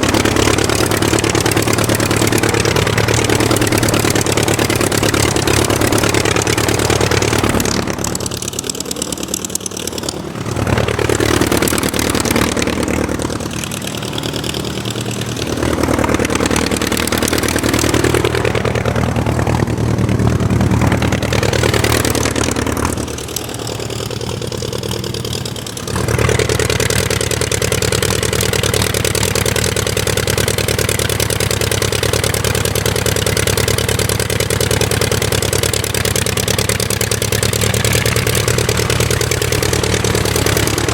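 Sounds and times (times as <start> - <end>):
aircraft engine drone: 0.0 - 40.9.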